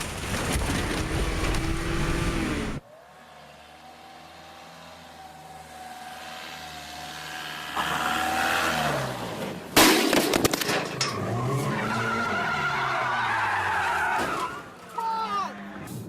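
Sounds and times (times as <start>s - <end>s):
engine hum rising in pitch: 1.0s - 9.4s.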